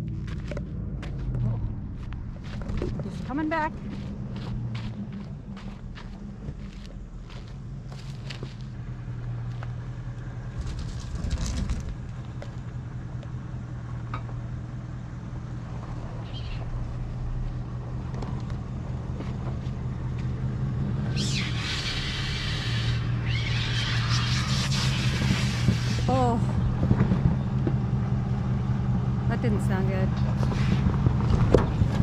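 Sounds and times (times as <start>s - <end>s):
vehicle engine running: 0.0s - 32.0s.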